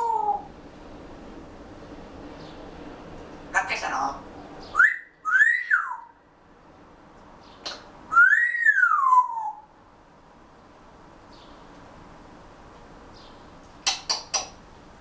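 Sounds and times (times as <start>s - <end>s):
parrot whistling: 4.7s - 6.1s, 7.7s - 9.6s.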